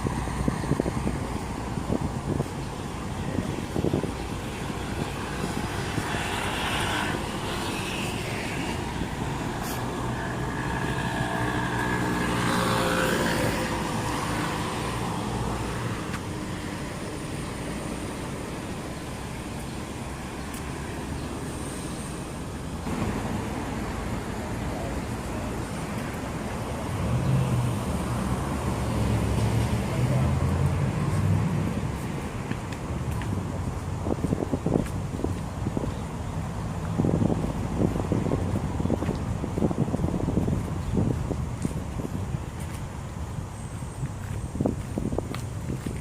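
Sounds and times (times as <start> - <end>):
city traffic noise: 0.0 - 46.0
vehicle engine passing: 22.8 - 32.4.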